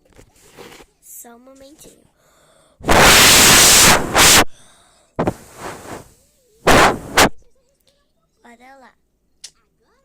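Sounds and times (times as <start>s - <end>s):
rushing hiss-like noise: 2.8s - 4.6s, 5.2s - 7.4s.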